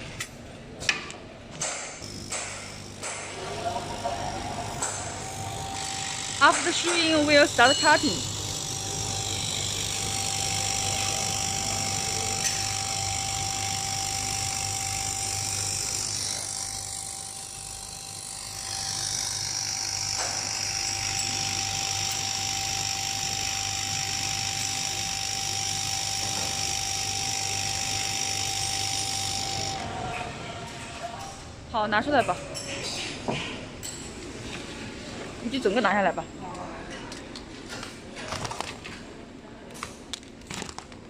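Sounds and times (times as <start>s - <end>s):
laser cutter whine: 2.0s - 30.2s
low machine hum: 2.0s - 30.6s.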